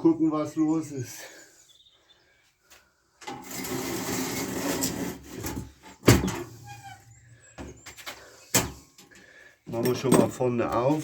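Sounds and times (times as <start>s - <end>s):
rattling and scraping: 3.3s - 7.5s, 9.7s - 11.0s.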